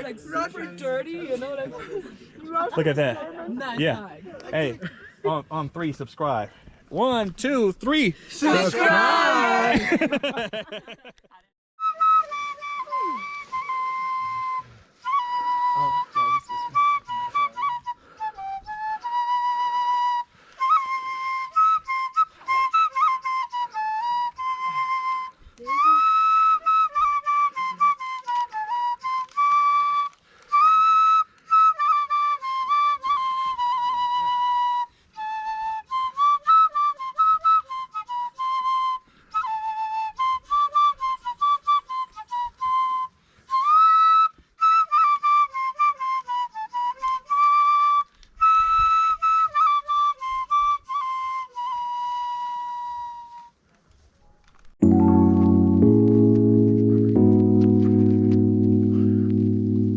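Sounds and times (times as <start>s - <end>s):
flute melody: 11.8s - 53.6s, 54.8s - 59.9s.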